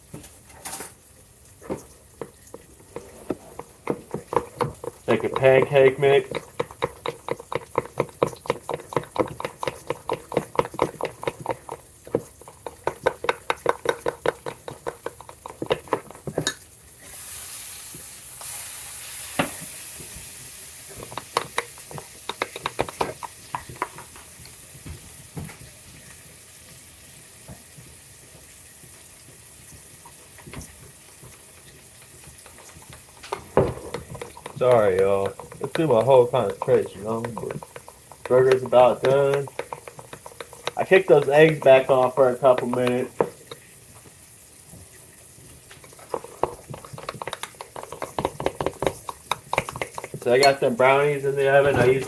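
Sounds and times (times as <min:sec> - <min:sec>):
burger sizzling in a frying pan: 0:00.0 - 0:52.0
batter beaten in a bowl: 0:01.6 - 0:25.7, 0:28.8 - 0:44.1, 0:45.7 - 0:52.0
utensil clinking against bowl: 0:01.7 - 0:16.6, 0:21.0 - 0:24.1, 0:32.4 - 0:43.6, 0:45.8 - 0:52.0.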